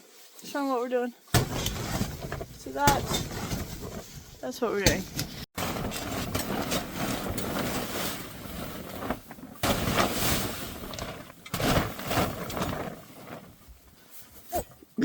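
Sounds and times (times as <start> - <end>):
snow scraping off a tarp: 5.6 - 14.6.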